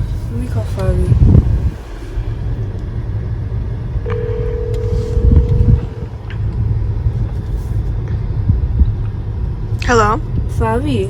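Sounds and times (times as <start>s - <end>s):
low rumble: 0.0s - 10.5s
telephone ringback tone: 4.1s - 6.1s.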